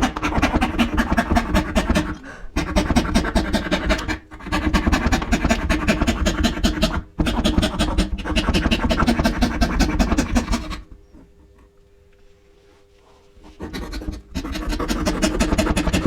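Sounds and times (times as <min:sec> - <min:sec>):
faint steady hum: 0:00.0 - 0:16.0
hand tool scraping wood: 0:13.4 - 0:16.0.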